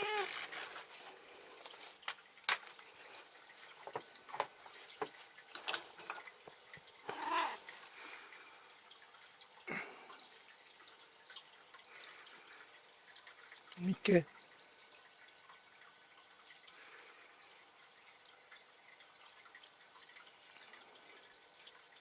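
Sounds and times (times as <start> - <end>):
cat mewing: 0.0 - 0.4, 7.0 - 7.9.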